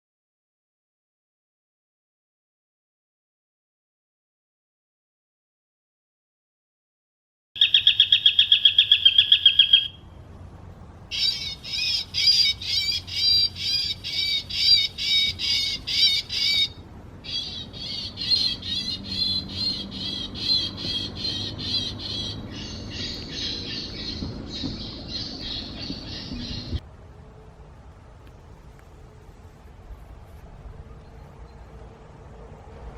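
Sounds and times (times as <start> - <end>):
bird squawking calls: 7.6 - 10.0, 11.1 - 26.8.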